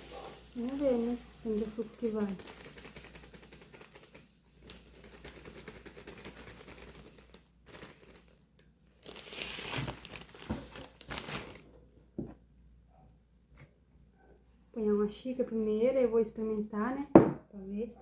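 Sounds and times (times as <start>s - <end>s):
plastic packaging crinkling: 7.2s - 8.3s, 8.9s - 11.8s.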